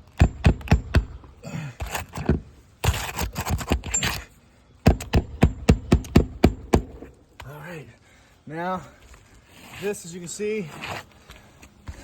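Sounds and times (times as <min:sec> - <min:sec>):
scraping rustle: 0:09.0 - 0:12.0.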